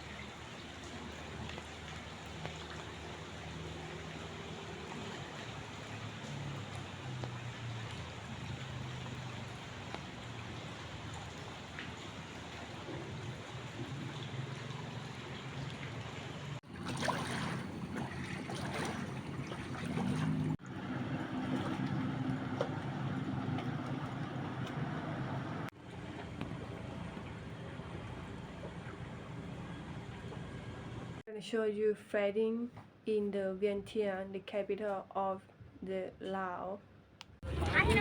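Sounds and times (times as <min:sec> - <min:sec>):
rain: 0:00.0 - 0:16.6
running water: 0:00.0 - 0:31.2, 0:37.4 - 0:38.0
low engine hum: 0:00.0 - 0:31.3, 0:37.4 - 0:38.0.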